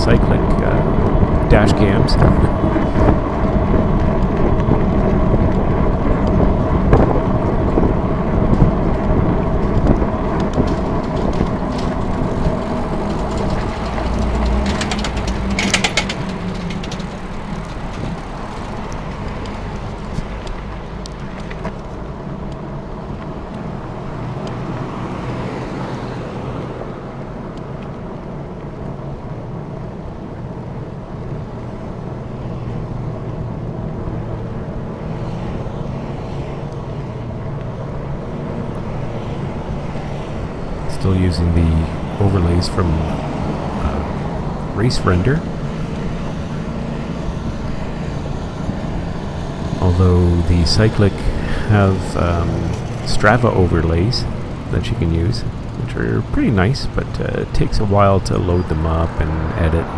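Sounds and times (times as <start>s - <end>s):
rapid clicking: 0.0s - 22.6s
car and truck engines: 0.0s - 59.9s.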